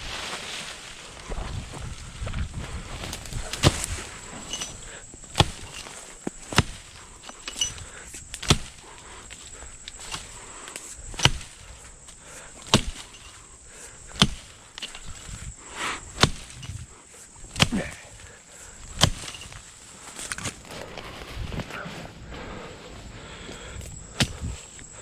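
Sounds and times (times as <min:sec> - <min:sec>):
axe chopping wood: 0:03.1 - 0:11.7, 0:12.6 - 0:13.3, 0:14.0 - 0:15.1, 0:16.1 - 0:16.8, 0:17.4 - 0:18.0, 0:19.0 - 0:19.4, 0:24.2 - 0:24.5.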